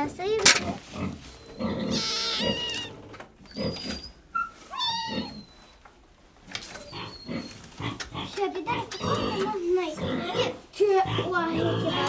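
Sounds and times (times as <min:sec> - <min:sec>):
cat meowing: 0:01.9 - 0:03.0.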